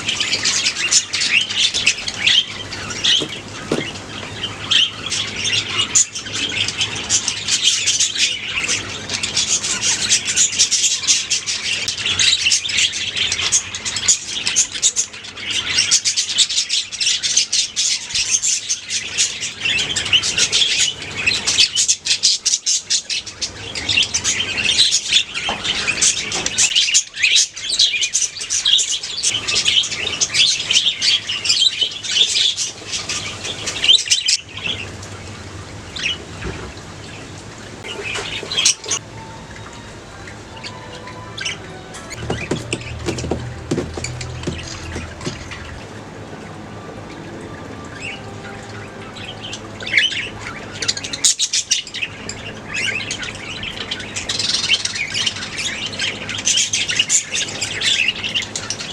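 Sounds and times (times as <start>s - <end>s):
budgerigars chirping and chattering: 0.0s - 34.9s, 39.8s - 45.8s, 49.0s - 58.9s.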